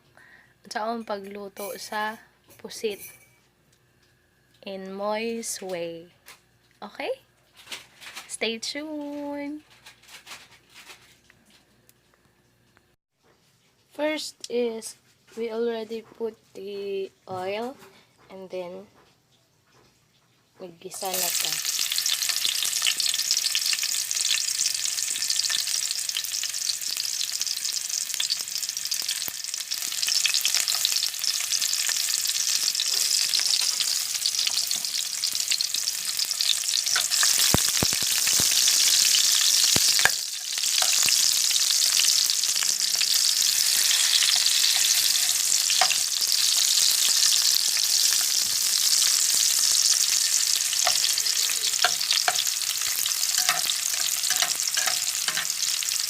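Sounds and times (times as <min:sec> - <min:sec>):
food sizzling in hot oil: 0:20.8 - 0:56.0.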